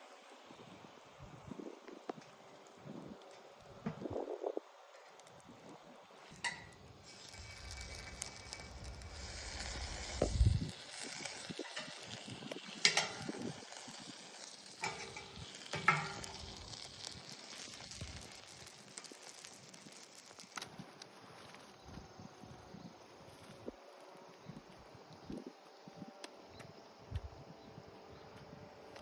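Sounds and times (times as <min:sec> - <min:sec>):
wood fire crackling and popping: 0:00.0 - 0:22.0.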